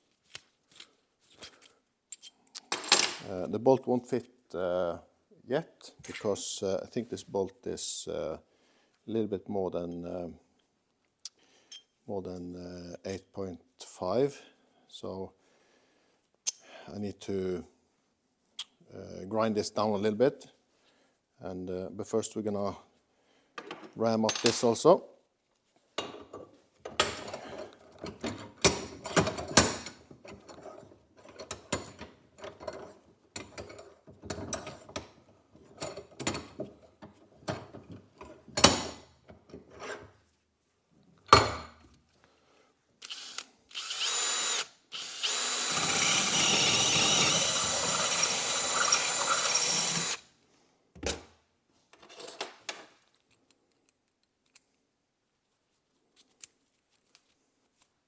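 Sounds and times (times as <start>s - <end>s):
power drill running: 43.0s - 50.2s.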